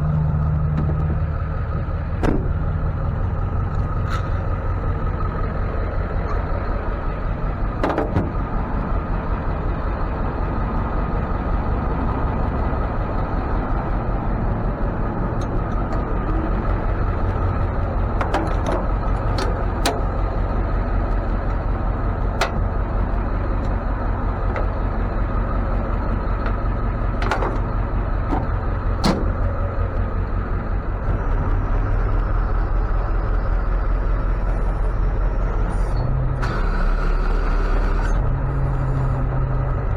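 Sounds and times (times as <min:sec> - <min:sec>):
truck engine and road rumble: 0:00.0 - 0:39.9
sharp clicks and knocks: 0:02.2 - 0:02.7, 0:07.8 - 0:08.5, 0:14.6 - 0:30.0.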